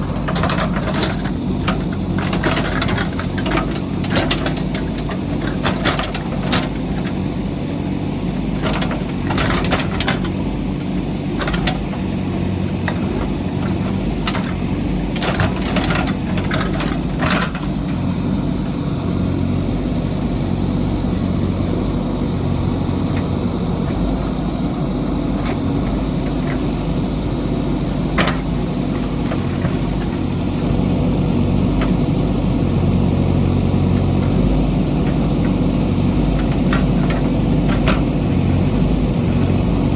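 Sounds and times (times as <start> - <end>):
sharp knocks and clatter: 0.0 - 7.3, 8.4 - 10.5, 11.3 - 18.2, 28.0 - 30.4
diesel engine running: 0.0 - 39.9.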